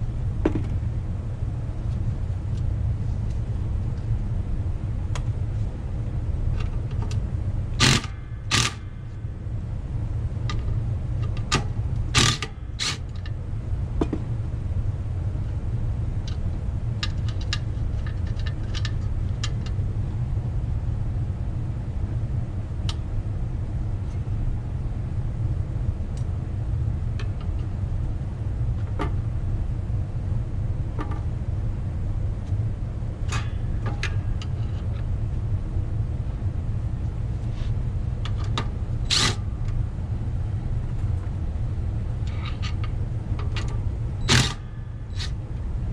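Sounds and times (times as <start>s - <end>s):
steady low hum: 0.0s - 45.9s
wrench clicking on metal bolts: 7.8s - 8.9s, 11.3s - 13.2s, 38.3s - 39.5s, 43.4s - 45.4s.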